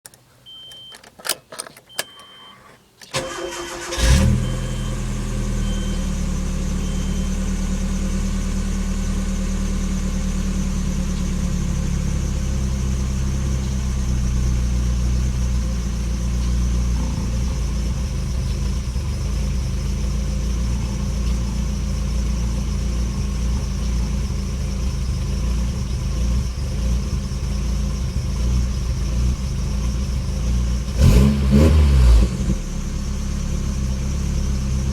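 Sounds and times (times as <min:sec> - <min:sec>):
clicks: 0:00.0 - 0:03.6
engine cranking and starting: 0:00.0 - 0:06.0
short repeating beep: 0:01.9 - 0:02.7
engine rough idle: 0:03.1 - 0:31.4, 0:32.1 - 0:34.9.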